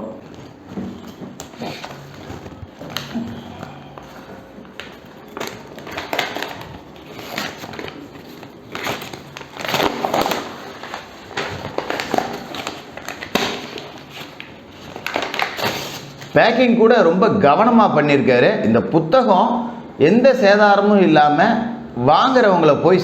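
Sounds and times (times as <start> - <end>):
packing paper crinkling and tearing: 0.0 - 16.4.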